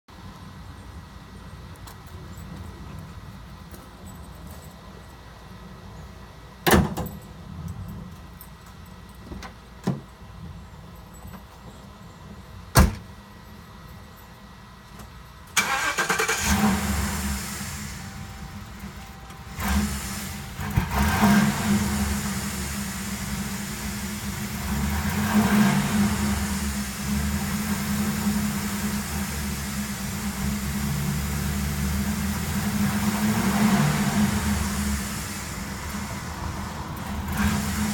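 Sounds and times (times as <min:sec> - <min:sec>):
car engine starting and running: 0:15.5 - 0:37.9.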